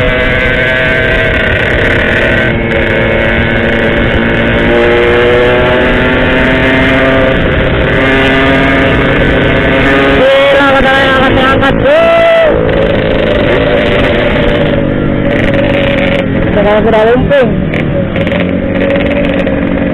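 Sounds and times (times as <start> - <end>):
motorcycle engine revving: 0.0 - 19.9.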